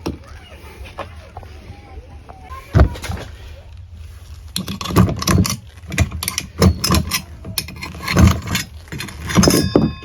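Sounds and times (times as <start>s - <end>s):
hole saw knocks and metallic rattles: 4.6s - 10.0s.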